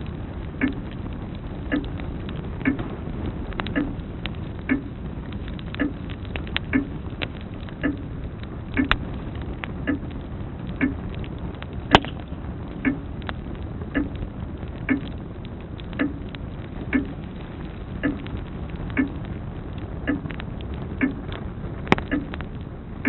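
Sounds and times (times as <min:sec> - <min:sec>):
log popping: 0:00.0 - 0:22.8
wood fire hissing and crackling: 0:00.0 - 0:23.0
grandfather clock ticking: 0:00.6 - 0:00.8, 0:01.7 - 0:02.0, 0:02.6 - 0:02.8, 0:03.7 - 0:04.0, 0:04.7 - 0:05.0, 0:05.7 - 0:07.0, 0:07.8 - 0:08.1, 0:08.8 - 0:09.0, 0:09.8 - 0:10.1, 0:10.8 - 0:11.0, 0:12.8 - 0:13.0, 0:14.0 - 0:14.2, 0:14.9 - 0:15.2, 0:16.0 - 0:16.3, 0:16.9 - 0:17.2, 0:18.0 - 0:18.3, 0:19.0 - 0:19.2, 0:20.1 - 0:20.4, 0:21.0 - 0:21.2.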